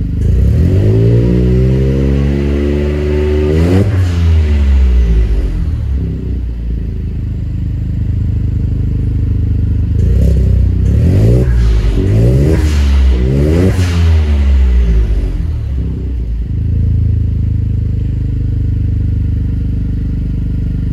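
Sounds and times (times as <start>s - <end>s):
vehicle engine idling and revving: 0.0s - 20.9s.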